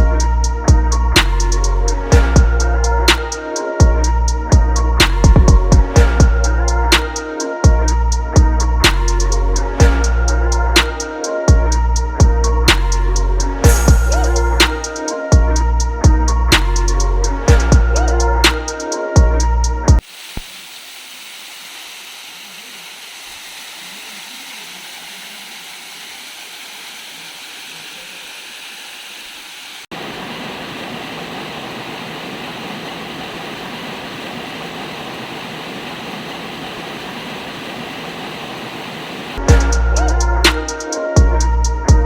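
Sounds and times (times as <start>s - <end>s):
waterfall rushing: 20.0s - 39.4s.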